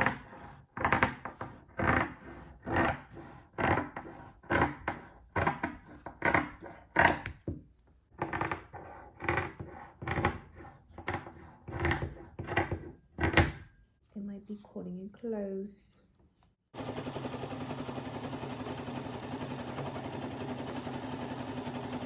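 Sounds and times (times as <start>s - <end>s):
scissors cutting fabric: 0.0s - 7.4s.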